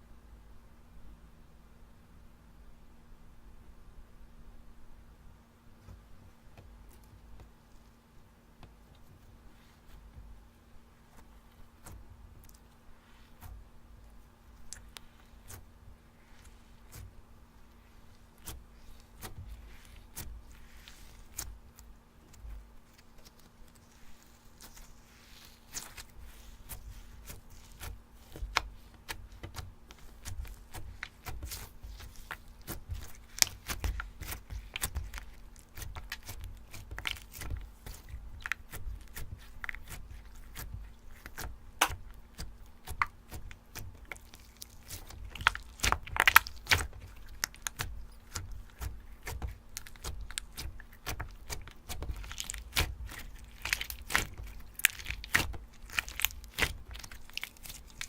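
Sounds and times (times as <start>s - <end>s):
slime crackling and popping: 17.8s - 58.0s.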